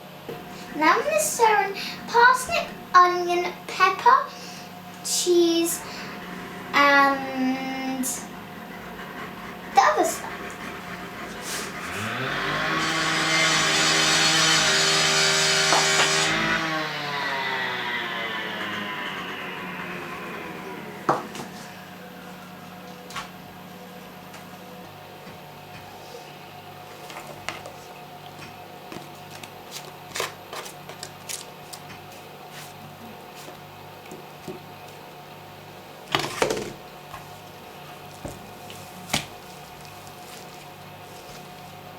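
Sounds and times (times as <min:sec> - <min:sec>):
steady low hum: 0:00.0 - 0:12.0
electric kitchen mixer motor: 0:00.0 - 0:23.9.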